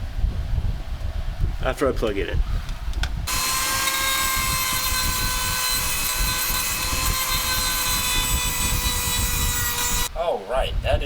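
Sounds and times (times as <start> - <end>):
electric motor whining: 3.3 - 10.1.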